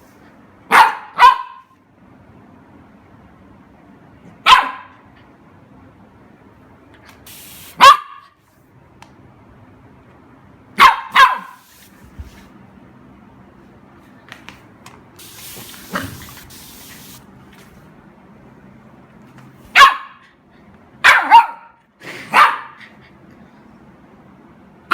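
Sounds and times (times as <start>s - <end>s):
puppy barking: 0.7s - 1.7s, 4.4s - 5.0s, 7.7s - 8.4s, 10.8s - 11.6s, 19.7s - 20.3s, 21.0s - 22.8s
spray hissing: 7.3s - 7.8s, 11.4s - 12.0s, 15.2s - 17.3s.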